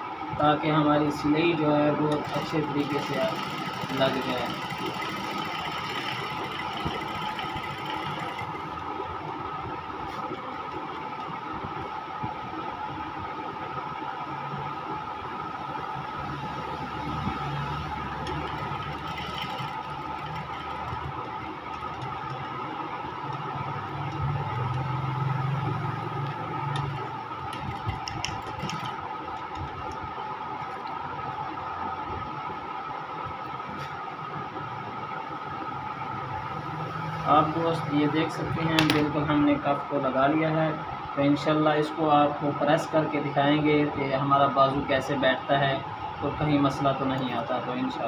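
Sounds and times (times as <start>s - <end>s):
sewing machine running: 1.9s - 8.9s, 17.4s - 29.6s.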